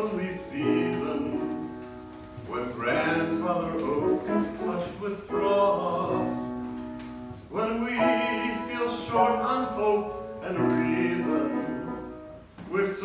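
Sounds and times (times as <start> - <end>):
instrumental accompaniment: 0.0 - 12.7
person singing: 7.5 - 13.0.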